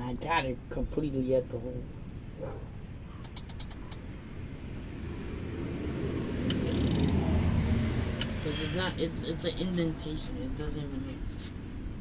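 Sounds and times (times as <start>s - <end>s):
small metallic clicks: 6.5s - 7.2s.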